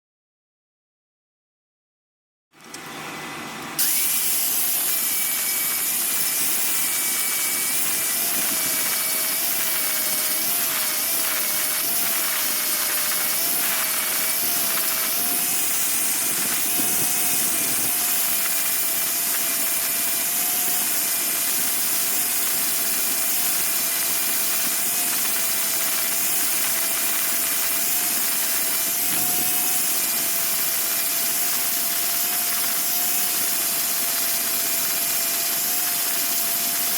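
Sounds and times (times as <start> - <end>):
welding arc hissing: 3.8 - 36.9
faint wavering whine: 3.9 - 21.0.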